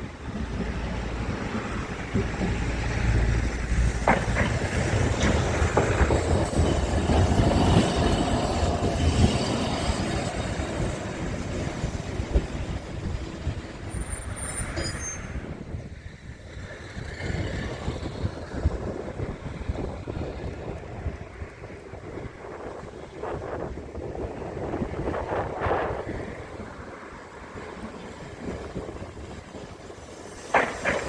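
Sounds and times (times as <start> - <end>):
rail vehicle rumble: 0.0 - 31.0
high-pitched wheel squeal: 13.9 - 15.6.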